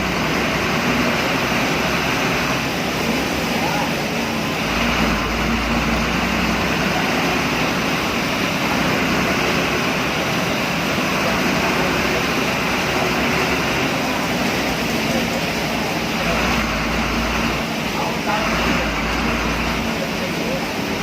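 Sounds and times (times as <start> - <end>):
bus engine running: 0.0 - 21.0
road and tyre noise: 0.0 - 21.0.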